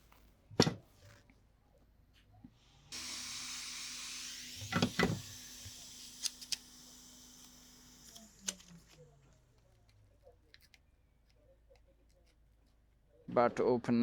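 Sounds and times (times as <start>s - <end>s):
hot air blower hissing: 2.7s - 9.0s.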